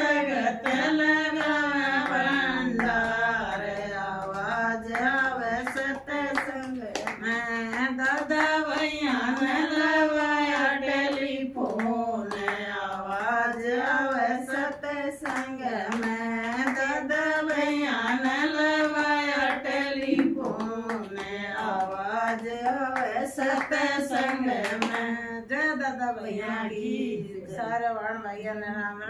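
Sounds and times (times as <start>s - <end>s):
hand-clapping: 0.0s - 25.9s
devotional folk singing: 0.0s - 29.0s.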